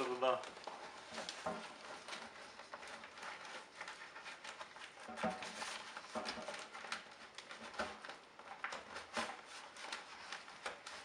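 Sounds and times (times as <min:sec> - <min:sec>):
dust bag rustling and crinkling: 0:00.0 - 0:08.4.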